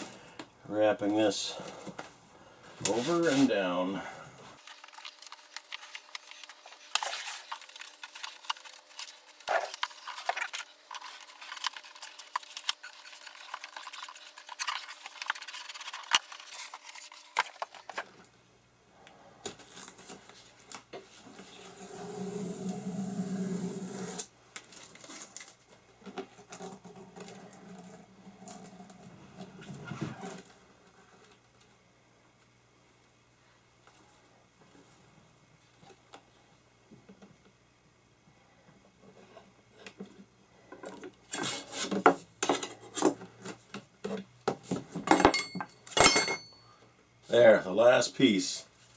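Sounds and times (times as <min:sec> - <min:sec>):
covering rustling and scraping: 0:00.9 - 0:18.3, 0:19.5 - 0:31.4, 0:39.0 - 0:45.6
rubbing on covering: 0:02.8 - 0:03.9.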